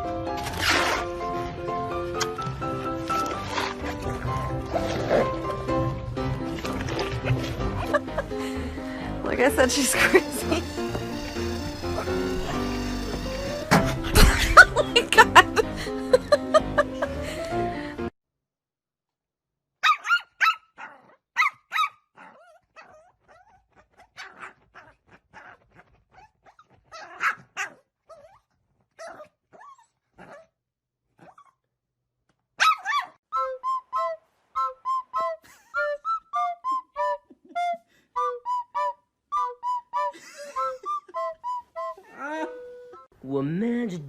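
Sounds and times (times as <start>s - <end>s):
dog barking and yipping: 19.8s - 28.4s, 29.0s - 30.5s, 32.6s - 33.2s.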